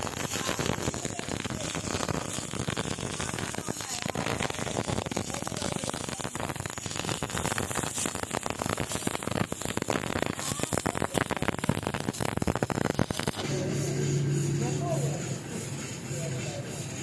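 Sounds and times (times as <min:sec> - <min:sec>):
small pops: 0:00.0 - 0:13.6
welding arc crackling and sizzling: 0:00.0 - 0:17.0.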